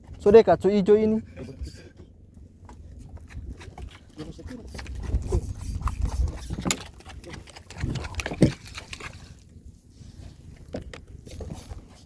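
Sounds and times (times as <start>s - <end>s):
wind rumbling on microphone: 2.6s - 12.0s
water splashing: 4.4s - 9.4s.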